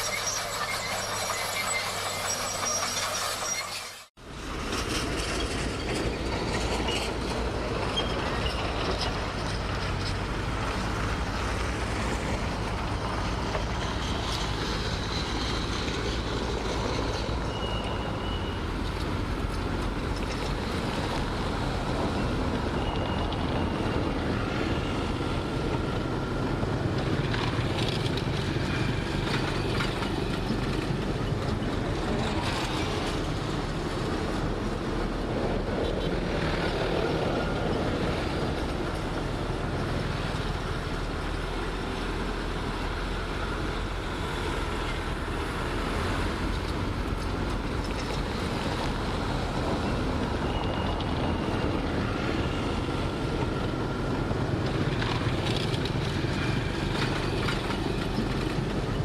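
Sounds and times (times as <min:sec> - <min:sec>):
brief high squeaks: 0:00.0 - 0:04.1
heavy diesel machinery running: 0:00.0 - 0:59.0.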